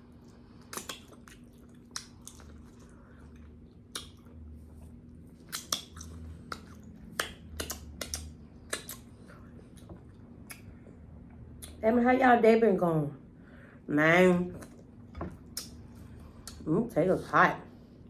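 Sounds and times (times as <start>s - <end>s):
mouth chewing and smacking: 0.2s - 11.8s.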